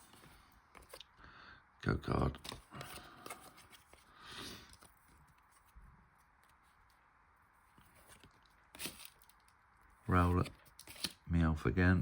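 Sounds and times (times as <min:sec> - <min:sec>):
cards rustling softly: 0:00.0 - 0:01.2, 0:01.9 - 0:11.4.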